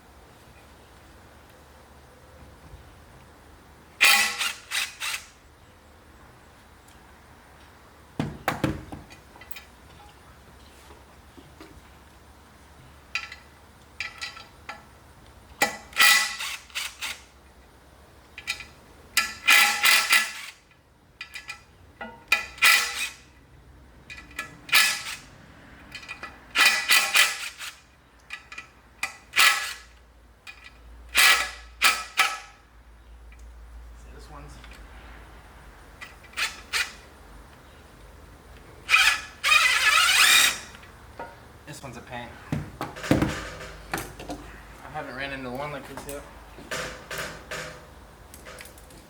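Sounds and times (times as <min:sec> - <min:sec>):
impact wrench hammering: 0:08.2 - 0:09.2, 0:42.5 - 0:44.4.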